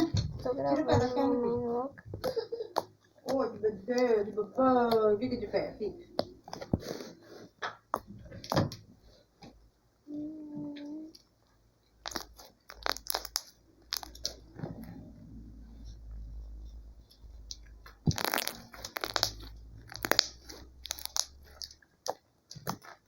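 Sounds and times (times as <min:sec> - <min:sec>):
slime crackling and popping: 0:12.0 - 0:14.9, 0:17.3 - 0:23.0.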